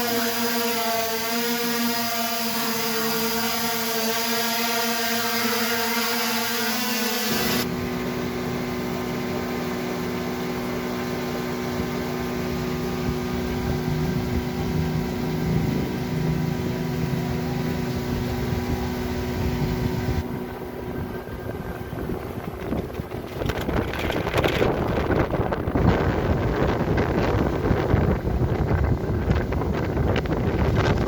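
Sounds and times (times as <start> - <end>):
drone propellers humming: 0.0 - 31.0
wind buffeting microphone: 11.8 - 31.0.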